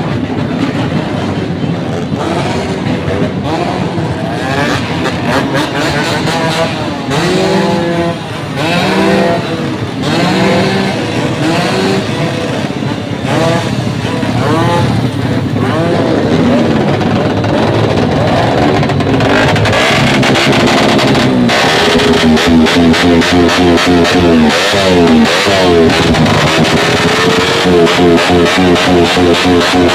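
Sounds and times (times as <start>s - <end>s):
engine revving through loud exhaust: 0.2s - 29.9s.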